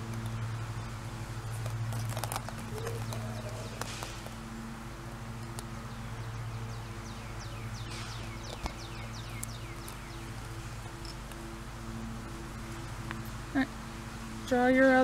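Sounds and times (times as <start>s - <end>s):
low hum: 0.0s - 15.0s
plastic eggs clicking: 1.5s - 4.4s, 8.4s - 11.6s.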